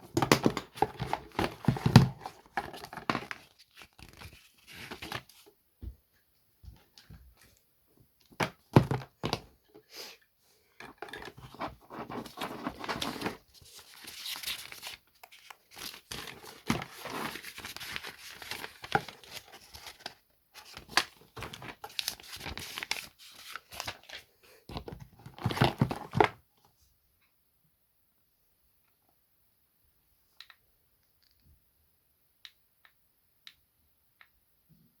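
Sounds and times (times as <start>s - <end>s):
packaging crinkling and tearing: 12.1s - 24.2s.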